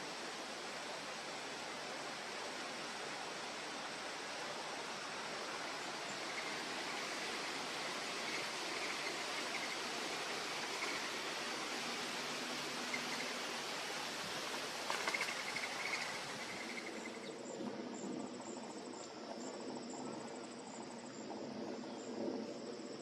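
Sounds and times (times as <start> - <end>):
broad hiss: 0.0 - 17.3
crickets trilling: 1.5 - 23.0.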